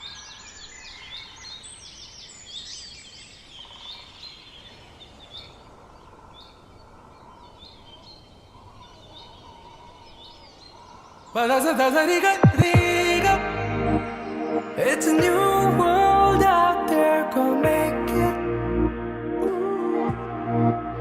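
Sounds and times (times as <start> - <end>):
small birds chirping: 0.0 - 12.5.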